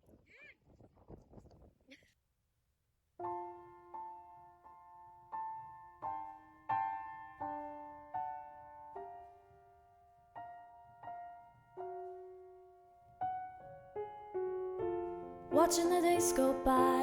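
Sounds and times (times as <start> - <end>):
soft solo piano notes: 3.2 - 17.0.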